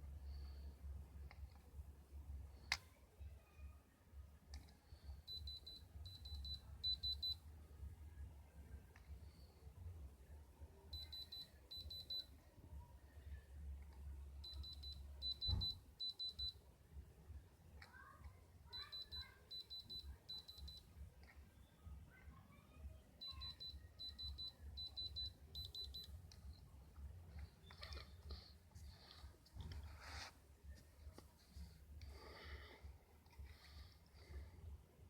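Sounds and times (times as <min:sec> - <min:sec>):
electronic alarm beeping: 0:05.3 - 0:07.4, 0:11.0 - 0:12.3, 0:14.4 - 0:16.6, 0:18.8 - 0:20.9, 0:23.2 - 0:26.6.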